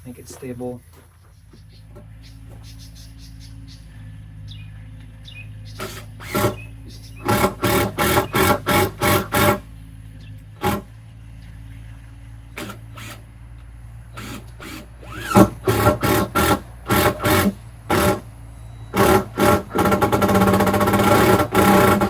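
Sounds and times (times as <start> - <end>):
cordless power drill running: 5.8 - 9.7, 10.6 - 10.9, 12.5 - 13.3, 14.0 - 22.0.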